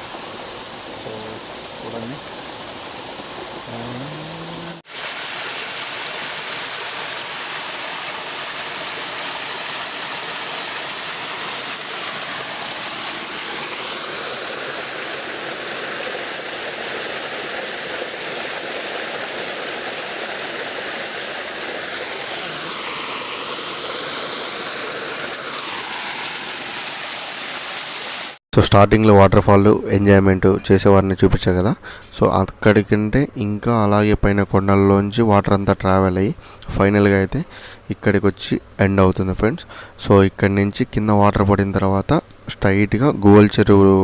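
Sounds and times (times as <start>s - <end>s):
waterfall pouring and splashing: 0.0s - 28.4s.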